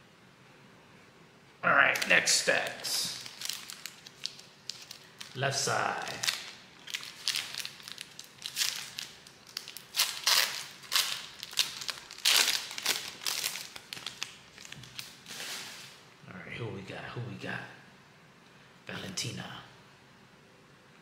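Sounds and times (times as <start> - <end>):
card packaging crinkling: 1.8 - 16.0.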